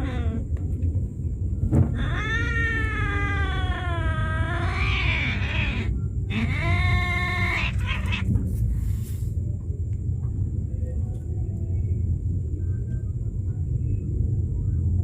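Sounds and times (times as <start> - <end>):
cat yowling: 0.0 - 0.4, 1.9 - 8.3.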